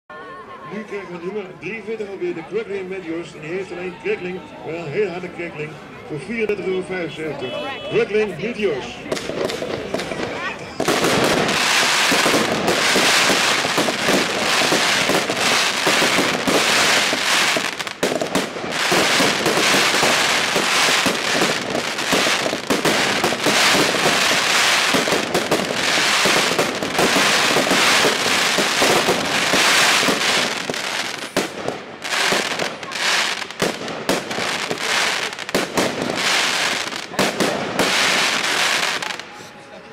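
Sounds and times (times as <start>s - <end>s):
firework crackling: 8.9s - 39.5s.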